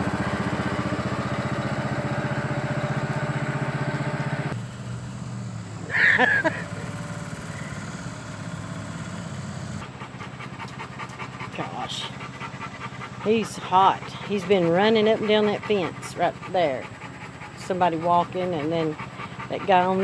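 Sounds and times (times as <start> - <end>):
lawn mower engine running: 0.0 - 14.0.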